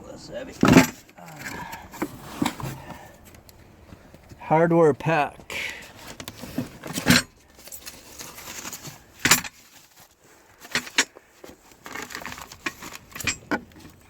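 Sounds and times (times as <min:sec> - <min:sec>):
metal parts clinking: 0:06.9 - 0:09.8, 0:11.8 - 0:14.0.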